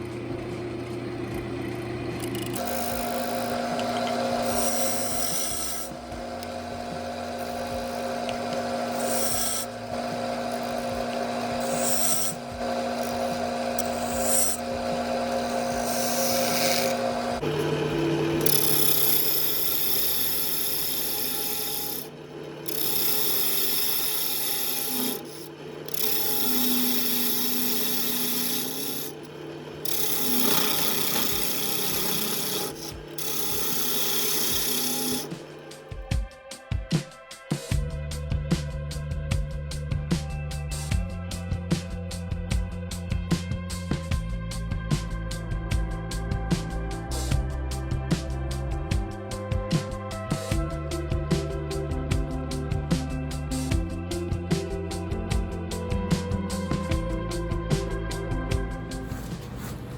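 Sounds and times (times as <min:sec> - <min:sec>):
wood lathe motor hum: 0:00.0 - 0:36.0
tool rasping against spinning wood: 0:02.2 - 0:36.0, 0:58.8 - 0:59.9.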